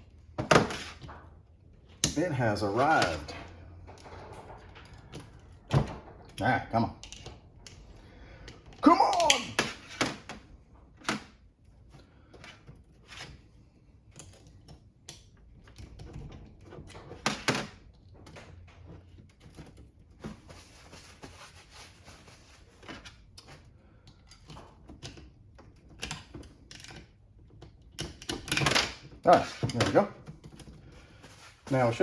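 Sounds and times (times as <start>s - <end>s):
hand tools clicking on metal: 8.5s - 9.6s.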